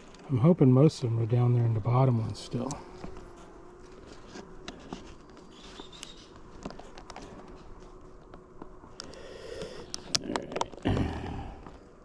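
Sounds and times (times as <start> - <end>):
light clicks of hive frames: 2.5 - 10.8.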